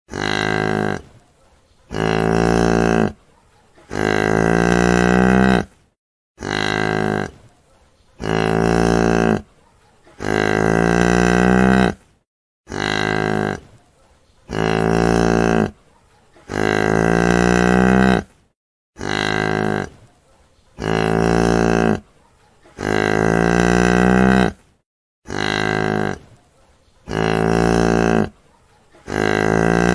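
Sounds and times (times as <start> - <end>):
cow mooing: 0.1 - 1.1, 1.9 - 3.2, 3.9 - 5.7, 6.4 - 7.4, 8.2 - 9.5, 10.2 - 12.0, 12.7 - 13.6, 14.5 - 15.8, 16.5 - 18.3, 19.0 - 19.9, 20.8 - 22.0, 22.8 - 24.6, 25.3 - 26.3, 27.1 - 28.4, 29.0 - 29.9.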